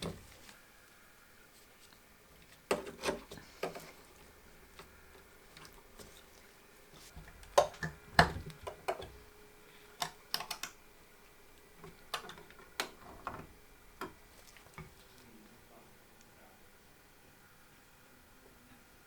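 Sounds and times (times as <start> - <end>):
computer parts clicking and tapping: 10.0 - 10.8, 11.8 - 14.2.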